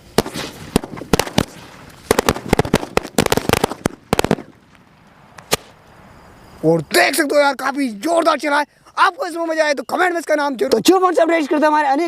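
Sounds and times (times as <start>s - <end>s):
firecrackers banging: 0.0s - 5.9s.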